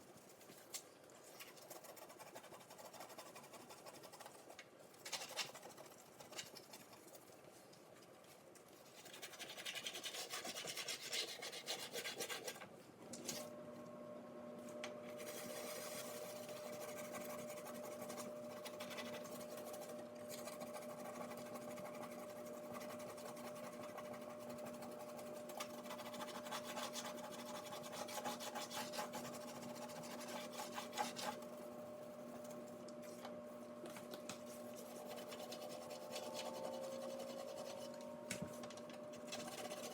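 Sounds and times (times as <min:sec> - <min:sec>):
steady hum: 0:13.2 - 0:39.9.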